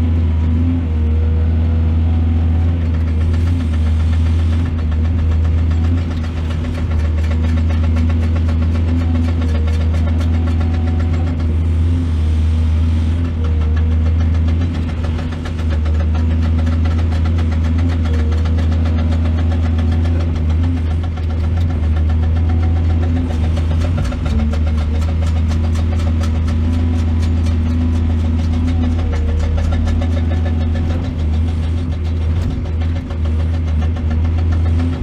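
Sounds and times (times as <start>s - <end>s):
excavator diesel engine droning: 0.0s - 35.0s.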